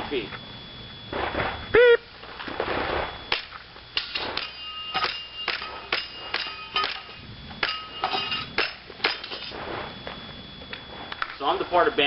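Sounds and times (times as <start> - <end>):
pellets hitting ringing steel targets: 3.3 - 9.6.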